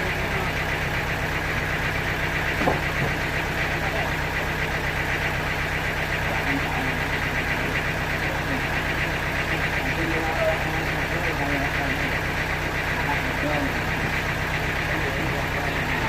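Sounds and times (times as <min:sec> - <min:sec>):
sawmill machinery hum: 0:00.0 - 0:16.0
short knock: 0:02.6 - 0:03.2.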